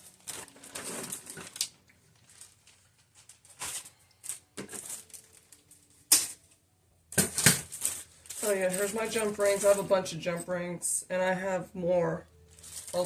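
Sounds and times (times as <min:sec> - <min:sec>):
plastic bag crackle: 0:00.0 - 0:06.6, 0:07.3 - 0:10.0, 0:12.4 - 0:13.0
plastic bags crinkling: 0:00.0 - 0:06.6, 0:07.2 - 0:10.1, 0:12.4 - 0:13.0.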